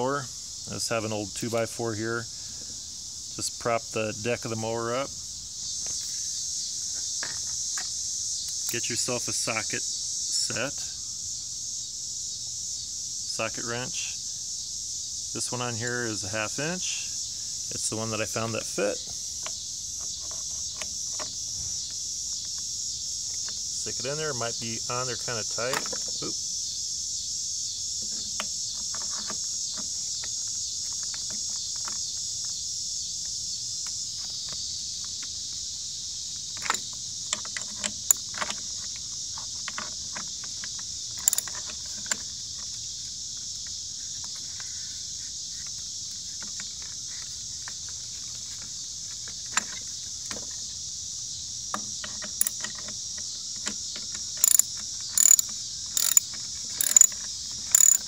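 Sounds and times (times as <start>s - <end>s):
insects buzzing: 0.0s - 58.0s
scattered clicks and knocks: 25.6s - 26.2s, 36.5s - 42.8s, 51.7s - 58.0s
socket wrench ratchet clicks: 40.6s - 42.3s, 52.0s - 53.0s, 53.6s - 58.0s.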